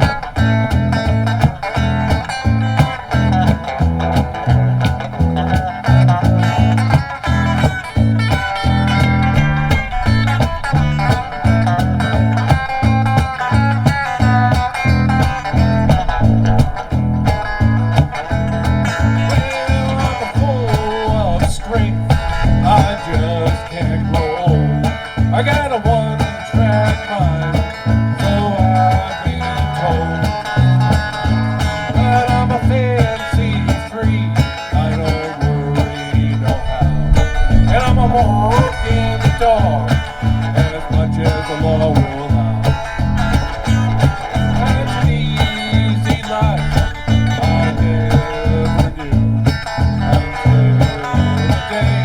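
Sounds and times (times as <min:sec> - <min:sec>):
bass guitar line: 0:00.0 - 0:52.0
electric lead guitar bending notes: 0:00.0 - 0:52.0
steady kick drum beat: 0:00.0 - 0:52.0.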